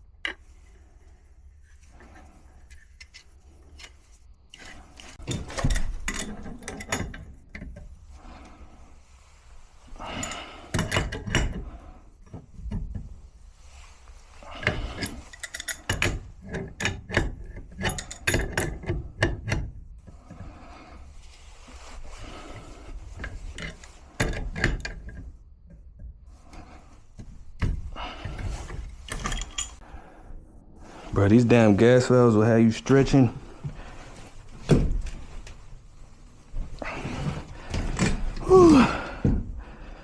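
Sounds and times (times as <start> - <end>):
pipe wrench clicking and scraping: 1.6 - 7.9, 14.5 - 20.5, 22.6 - 29.8.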